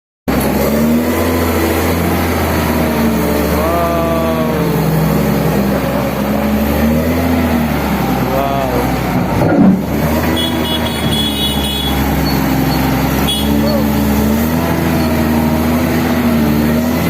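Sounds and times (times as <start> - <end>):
bulldozer diesel engine rumbling: 0.3 - 17.0.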